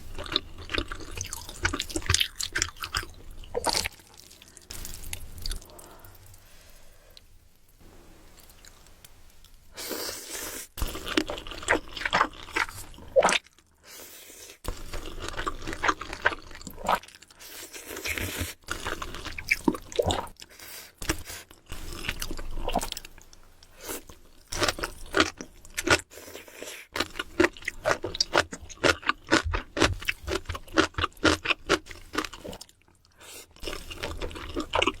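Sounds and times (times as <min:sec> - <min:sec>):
person crunching food: 0:23.8 - 0:32.8, 0:33.6 - 0:35.0.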